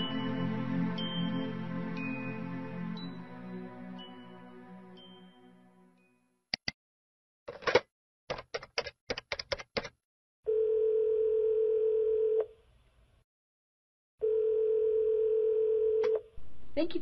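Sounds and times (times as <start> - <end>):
telephone ringback tone: 10.5 - 12.5, 14.2 - 16.1.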